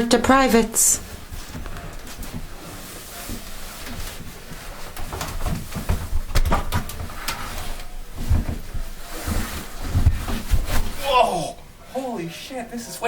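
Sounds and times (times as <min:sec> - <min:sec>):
clothing rustle: 0:00.0 - 0:13.0.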